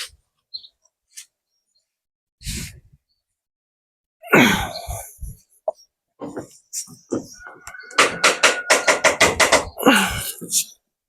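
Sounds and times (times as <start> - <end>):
man exhaling breathily: 9.8 - 10.4.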